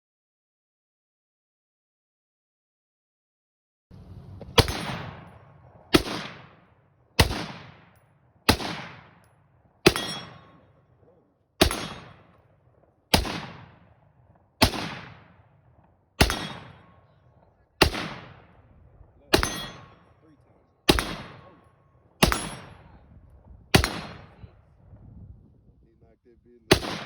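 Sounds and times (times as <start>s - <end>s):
pistol shots: 4.4s - 23.0s, 23.7s - 24.4s, 26.7s - 27.0s.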